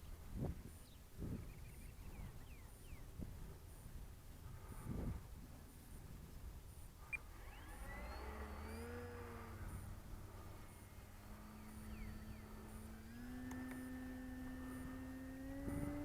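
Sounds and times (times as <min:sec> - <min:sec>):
model plane electric motor whine: 0:07.0 - 0:16.0.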